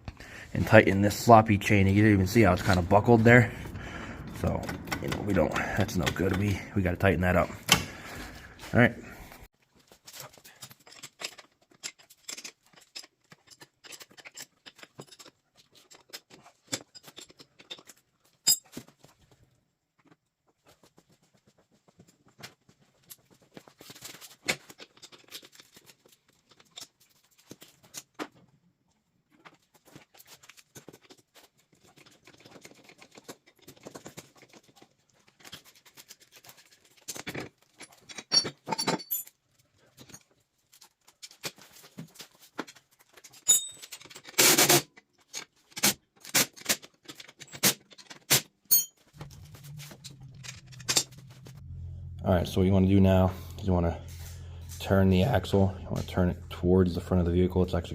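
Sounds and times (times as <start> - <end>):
hand tools clinking on bolts: 47.1 - 51.2.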